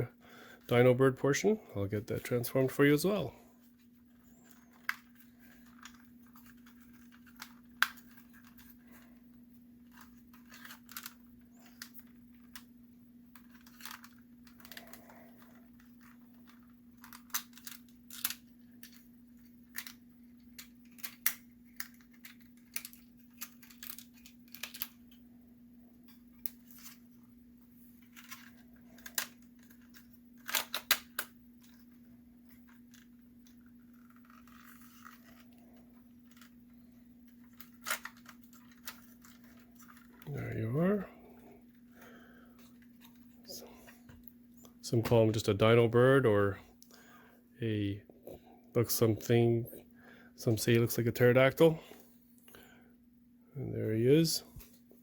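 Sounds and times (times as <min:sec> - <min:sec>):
steady low hum: 0:00.0 - 0:55.0
plastic toy parts clicking: 0:09.8 - 0:12.7, 0:13.4 - 0:19.0, 0:19.6 - 0:25.0, 0:28.1 - 0:31.8, 0:37.4 - 0:40.2.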